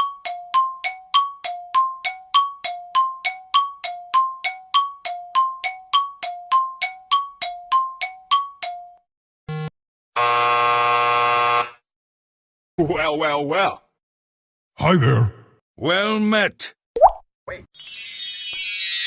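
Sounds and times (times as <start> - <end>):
harsh steady buzzer: 9.5 - 11.9.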